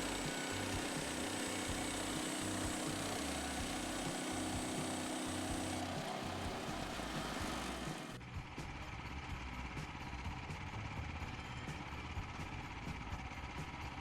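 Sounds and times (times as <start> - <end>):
band sawmill running: 0.0 - 8.2.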